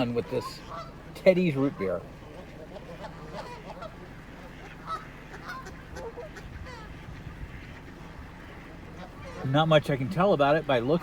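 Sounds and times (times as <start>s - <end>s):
geese honking: 0.0s - 11.0s
low steady hum: 0.0s - 11.0s.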